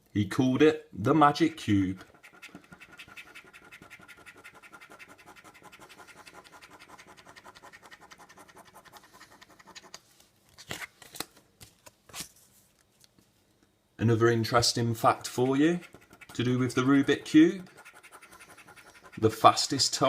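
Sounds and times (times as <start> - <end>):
scratch card being scratched: 1.4 - 10.0, 15.0 - 20.0.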